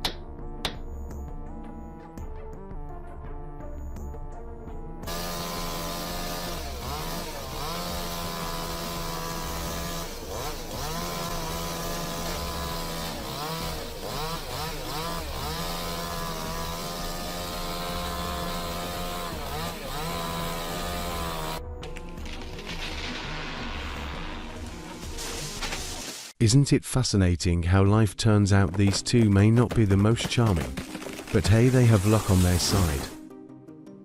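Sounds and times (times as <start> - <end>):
chainsaw running at high revs: 5.1 - 21.6, 30.6 - 33.2.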